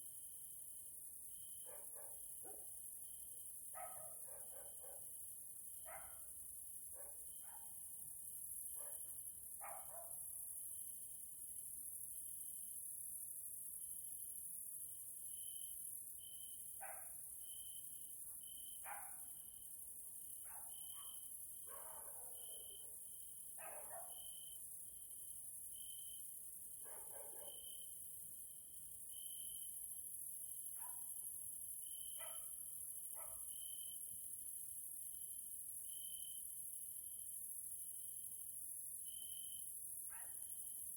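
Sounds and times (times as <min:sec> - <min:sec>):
dog barking faintly: 0:03.8 - 0:05.1, 0:08.8 - 0:10.2, 0:20.5 - 0:23.0, 0:23.6 - 0:24.2, 0:26.8 - 0:27.7, 0:32.2 - 0:32.6.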